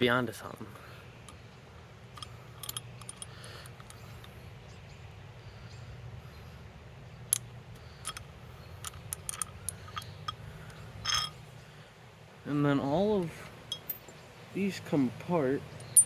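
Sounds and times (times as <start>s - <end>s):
low steady hum: 0.0s - 16.0s
bicycle parts clicking: 2.1s - 4.4s, 7.3s - 11.4s.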